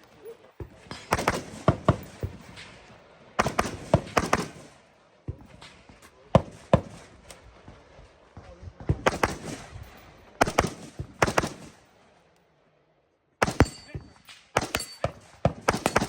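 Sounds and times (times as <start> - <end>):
rifle shots: 0.7 - 7.5, 9.0 - 12.0, 13.4 - 16.0.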